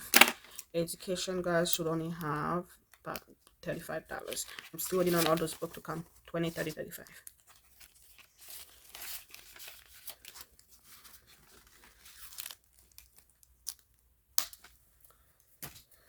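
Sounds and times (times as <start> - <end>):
paper rustling and crinkling: 4.1 - 13.5.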